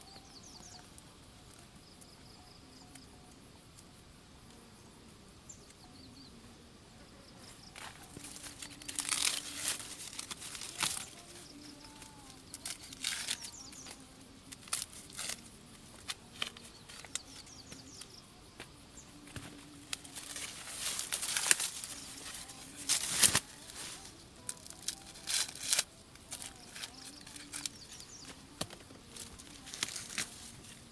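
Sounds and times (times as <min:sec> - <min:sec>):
leafy plants rustling and tearing: 0:07.7 - 0:18.1, 0:19.3 - 0:30.9.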